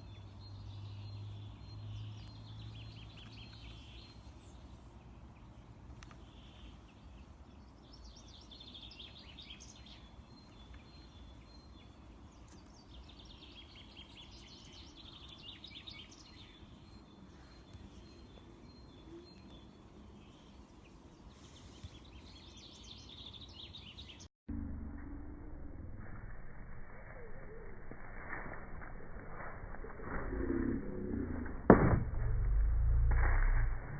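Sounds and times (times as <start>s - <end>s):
faint bird chirping: 0.0s - 24.3s
low hum: 24.5s - 33.9s.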